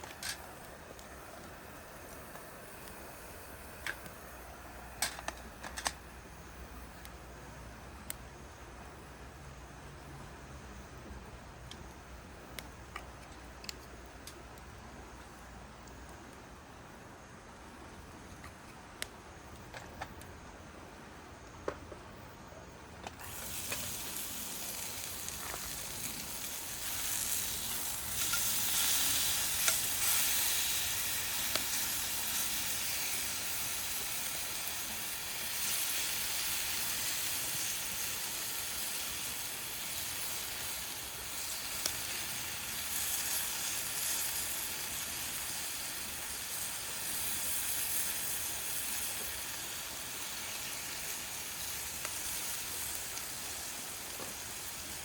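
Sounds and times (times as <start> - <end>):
rice sizzling in a frying pan: 23.2 - 55.0.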